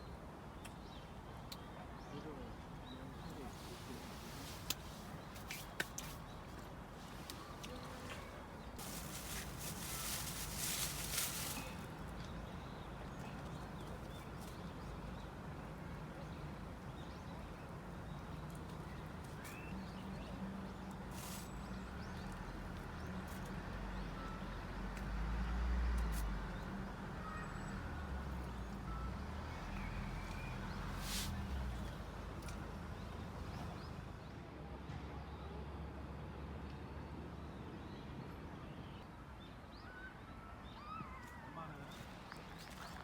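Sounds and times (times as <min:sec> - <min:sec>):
distant traffic rumble: 0:00.0 - 0:39.8.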